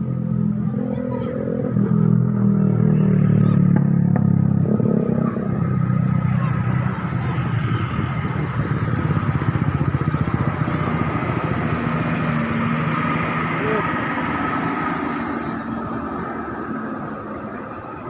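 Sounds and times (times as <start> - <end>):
truck diesel engine labouring: 4.7 - 18.0.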